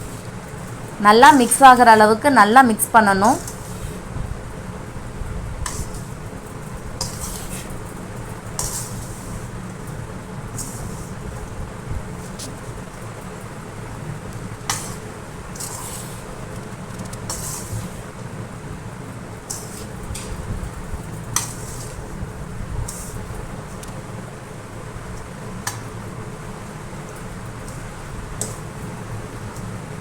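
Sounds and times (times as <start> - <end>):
utensil scraping a pan: 7.0 - 7.8.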